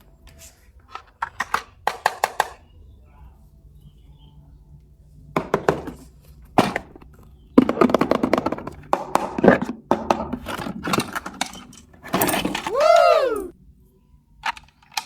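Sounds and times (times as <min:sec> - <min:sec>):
plastic toys clattering: 0:00.3 - 0:02.7, 0:05.4 - 0:13.5, 0:14.4 - 0:15.0.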